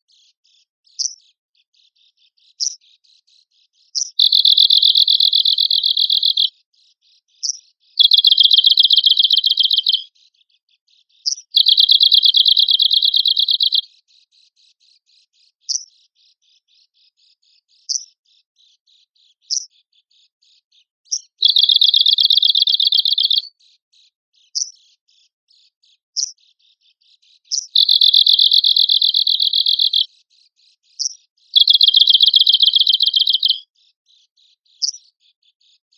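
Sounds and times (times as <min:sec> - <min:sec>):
bird rattling trills: 0:04.2 - 0:06.5, 0:07.4 - 0:10.0, 0:11.3 - 0:13.8, 0:21.4 - 0:23.5, 0:27.6 - 0:30.1, 0:31.0 - 0:33.6
sharp bird call notes: 0:04.2 - 0:06.5, 0:08.0 - 0:10.0, 0:11.6 - 0:13.8, 0:21.4 - 0:23.5, 0:27.8 - 0:30.1, 0:31.6 - 0:33.6.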